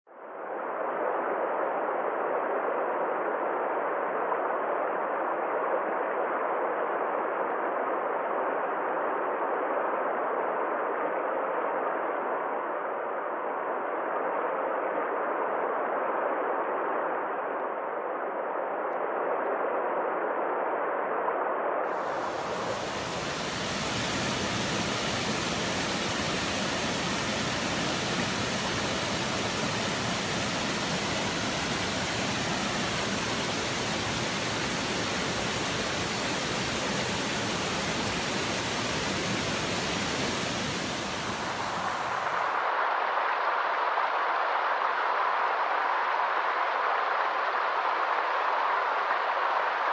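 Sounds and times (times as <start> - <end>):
waterfall rushing: 22.0 - 42.5.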